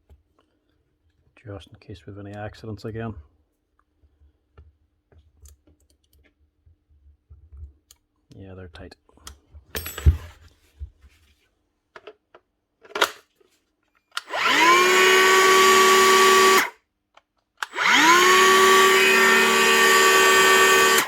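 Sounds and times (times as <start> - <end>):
power planer whining: 14.2 - 16.7, 17.7 - 21.0.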